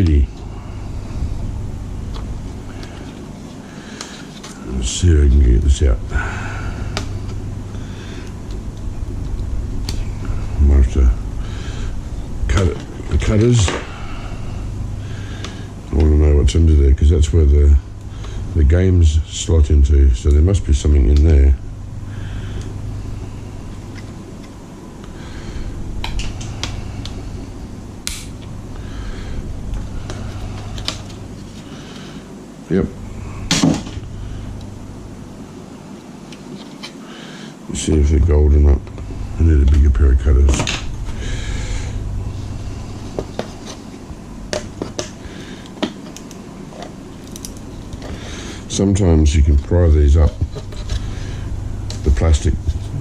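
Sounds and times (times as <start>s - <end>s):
low background hum: 0.0s - 53.0s
side cutters clicking and snapping: 28.1s - 28.3s
hand tools clicking and snapping: 47.2s - 47.6s.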